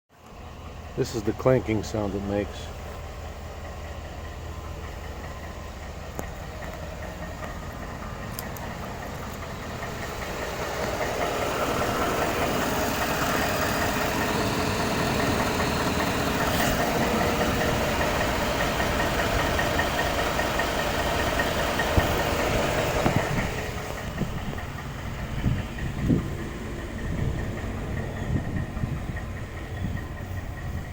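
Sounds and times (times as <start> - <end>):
engine running: 0.1 - 30.9
knocking clank inside engine: 13.0 - 30.8.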